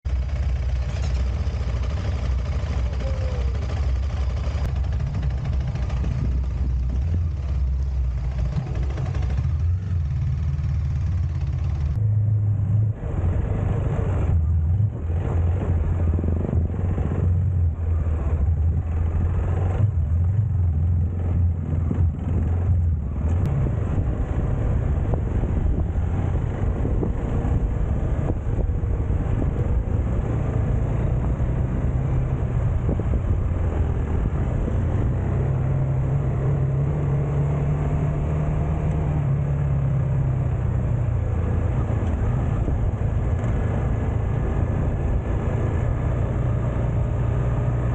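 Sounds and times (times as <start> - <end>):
motorcycle engine running: 0.1 - 12.2, 14.1 - 47.9
wind rushing over microphone: 12.6 - 47.9.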